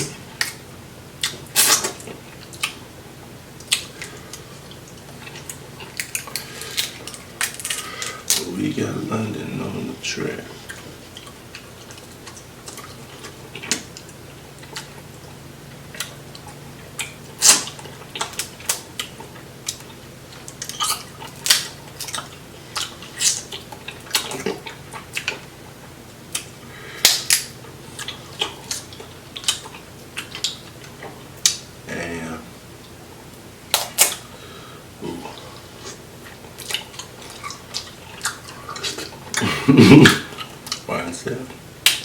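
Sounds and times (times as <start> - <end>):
chewing: 0.0 - 2.8, 3.6 - 8.6, 10.5 - 31.6, 33.7 - 40.9.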